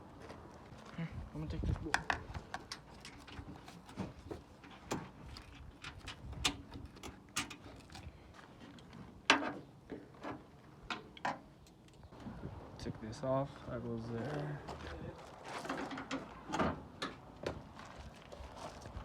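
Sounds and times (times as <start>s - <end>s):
hand tools clicking and knocking: 1.9s - 8.1s.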